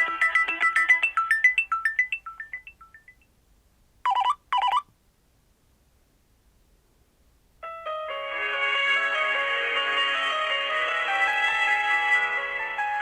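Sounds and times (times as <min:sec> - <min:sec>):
phone ringtone melody: 0:00.0 - 0:03.3, 0:04.1 - 0:04.8.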